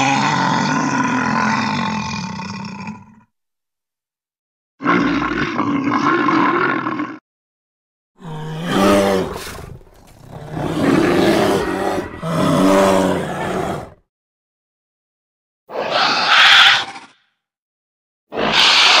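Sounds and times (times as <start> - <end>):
animal roaring: 0.0 - 3.3, 8.2 - 14.0.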